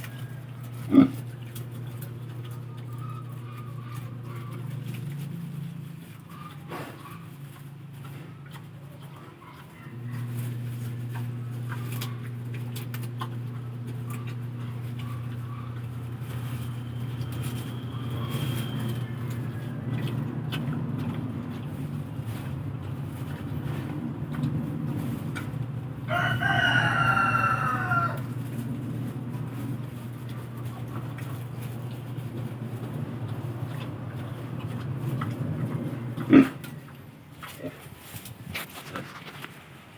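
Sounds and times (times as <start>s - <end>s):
rooster crowing: 0.0s - 0.8s, 17.7s - 20.1s, 26.0s - 28.4s
steady low hum: 0.0s - 38.8s.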